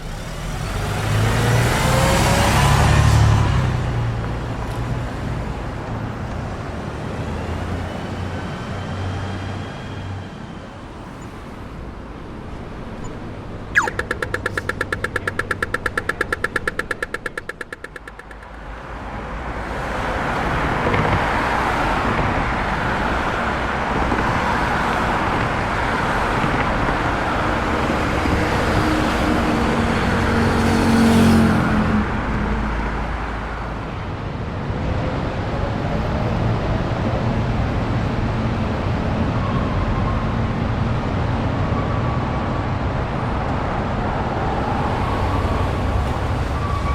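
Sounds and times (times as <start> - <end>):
vehicles passing: 0.0 - 39.9
fast electronic ticking: 13.8 - 18.6.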